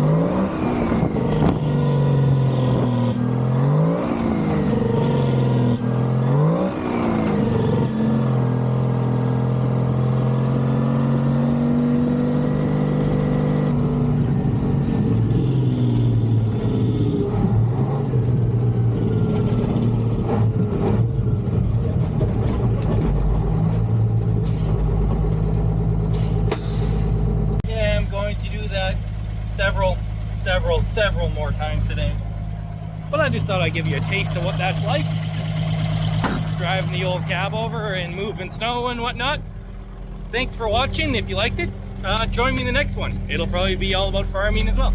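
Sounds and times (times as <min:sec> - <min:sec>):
diesel truck engine revving: 0:00.0 - 0:44.9
deeper rumble: 0:13.7 - 0:44.9.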